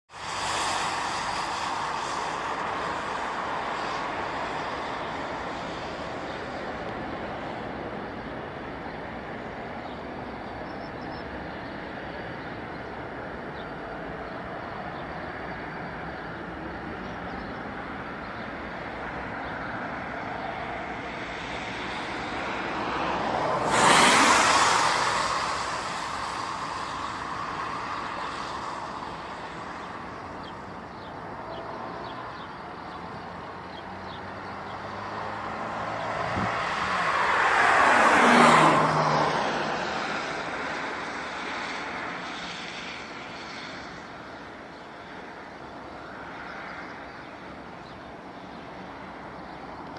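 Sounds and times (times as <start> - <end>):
steady engine noise: 11.6 - 42.5
vehicle passing by: 14.0 - 45.4.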